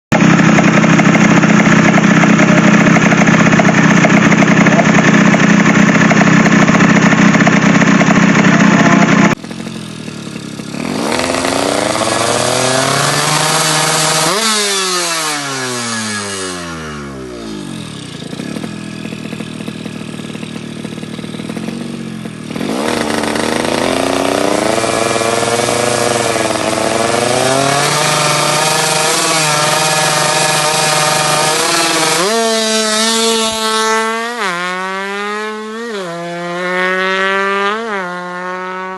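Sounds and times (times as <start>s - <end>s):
two-stroke motorcycle engine revving: 0.1s - 38.9s.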